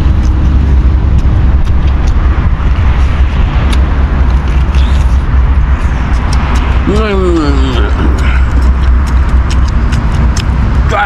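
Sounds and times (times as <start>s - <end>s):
deep rumble: 0.0s - 11.0s.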